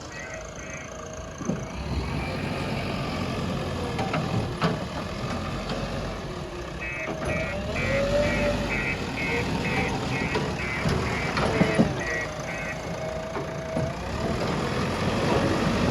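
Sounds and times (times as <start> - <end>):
reversing alarm beeping: 0.0 - 3.8, 6.6 - 14.9
diesel engine running: 0.0 - 15.9
engine knock: 6.8 - 14.7.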